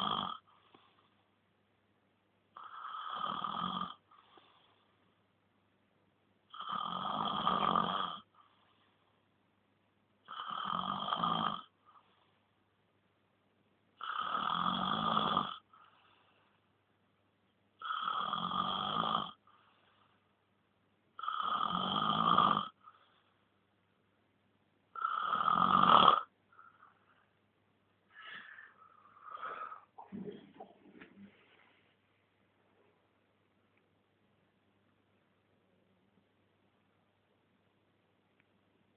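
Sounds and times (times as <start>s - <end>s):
person snoring: 0.0s - 0.5s, 2.6s - 4.5s, 6.5s - 8.3s, 10.3s - 11.7s, 14.0s - 15.7s, 17.8s - 19.4s, 21.2s - 22.8s, 25.0s - 26.3s
soft breath out: 28.1s - 32.0s.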